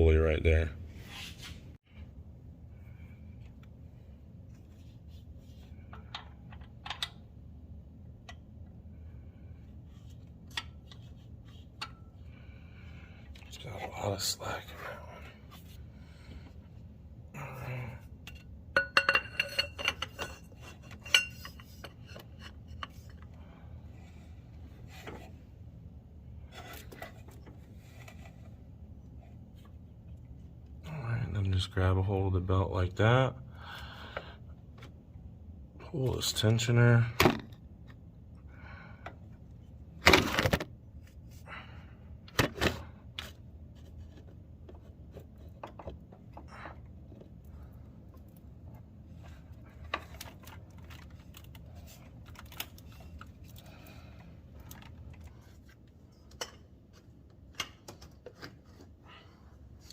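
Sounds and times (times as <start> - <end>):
metal tools clinking on metal: 18.3 - 22.0
faint knocks and scrapes: 24.0 - 25.5.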